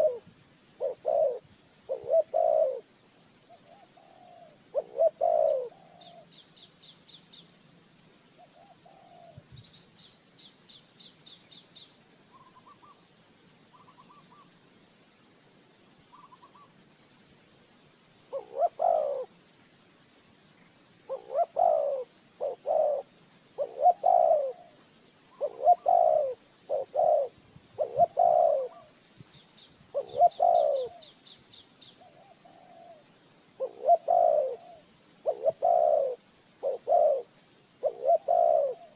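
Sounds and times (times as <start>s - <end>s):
dove cooing: 0.0s - 2.9s, 3.5s - 6.3s, 8.4s - 9.5s, 18.3s - 19.3s, 21.1s - 29.0s, 29.9s - 31.1s, 32.0s - 38.9s.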